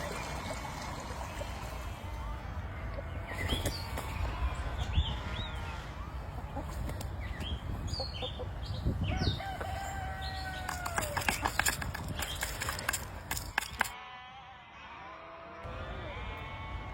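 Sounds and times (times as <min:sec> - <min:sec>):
small birds chirping: 0:02.7 - 0:13.9
rooster crowing: 0:09.1 - 0:11.3.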